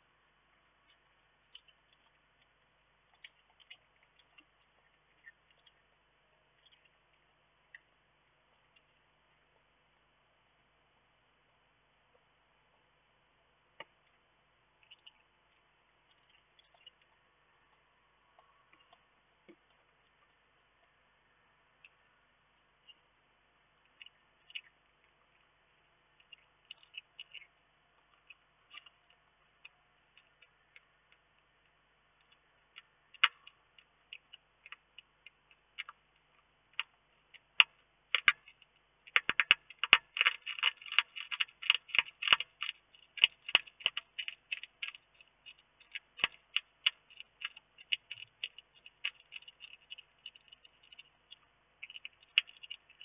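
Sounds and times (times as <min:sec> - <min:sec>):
hedgehog clicks and crackles: 0:00.8 - 0:05.9, 0:14.8 - 0:21.0, 0:23.8 - 0:53.0.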